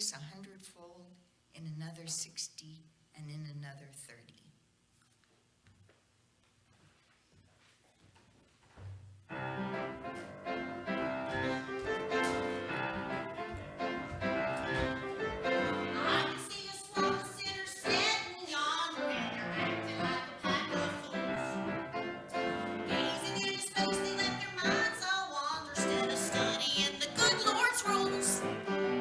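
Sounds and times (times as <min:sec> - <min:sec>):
singing with instruments: 0:14.4 - 0:21.7, 0:22.3 - 0:29.0.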